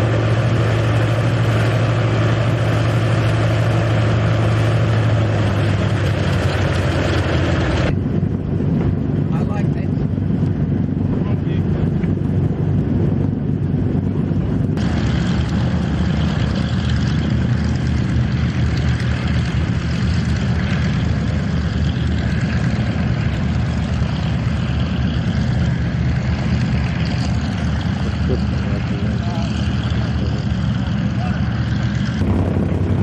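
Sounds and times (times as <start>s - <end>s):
propeller engines droning: 0.0s - 33.0s.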